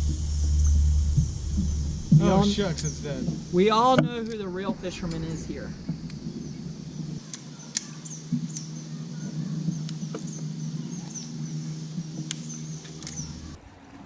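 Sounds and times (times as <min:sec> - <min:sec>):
small bird chirping: 0:00.0 - 0:13.6
steady low hum: 0:00.0 - 0:13.6
sharp clicks: 0:01.4 - 0:08.8, 0:09.6 - 0:11.4, 0:12.0 - 0:13.5.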